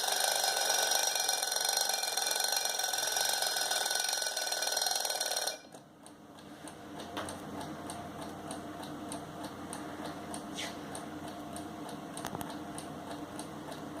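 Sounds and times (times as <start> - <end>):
alarm clock ticking: 0.0 - 5.8.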